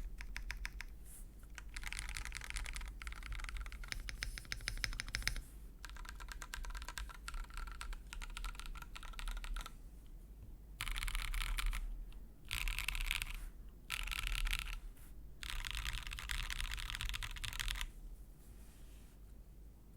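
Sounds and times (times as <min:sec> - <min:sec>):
mechanical keyboard typing: 0:00.0 - 0:09.8, 0:10.8 - 0:11.9, 0:12.5 - 0:14.8, 0:15.4 - 0:17.9.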